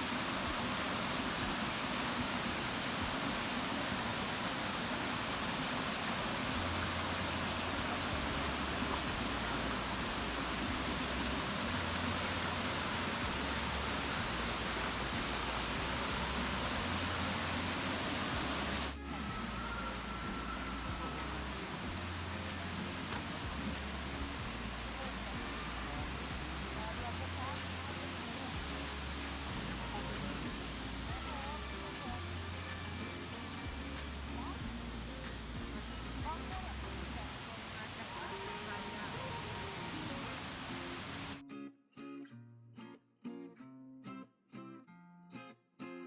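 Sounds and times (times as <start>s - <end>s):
waterfall rushing: 0.0s - 41.4s
low bass notes: 6.5s - 37.4s.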